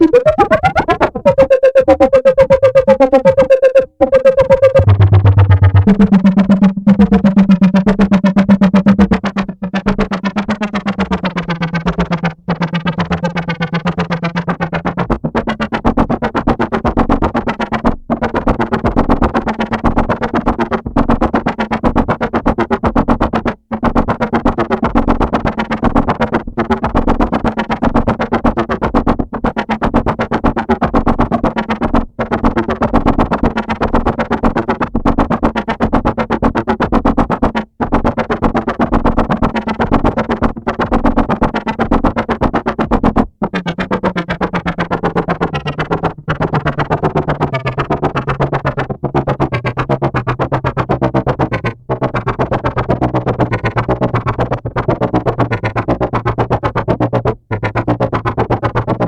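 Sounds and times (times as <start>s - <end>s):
low synthesizer drone: 0.0s - 15.2s
rapidly pulsing synthesizer: 0.0s - 59.0s.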